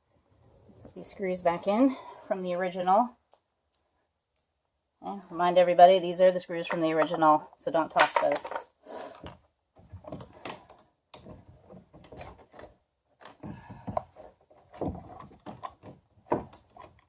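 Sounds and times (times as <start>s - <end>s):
hands handling screws and plastic: 7.9s - 17.0s.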